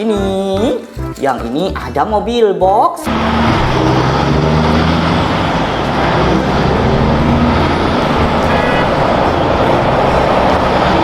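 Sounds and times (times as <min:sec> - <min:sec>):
truck engine drone with hiss: 0:03.1 - 0:11.0.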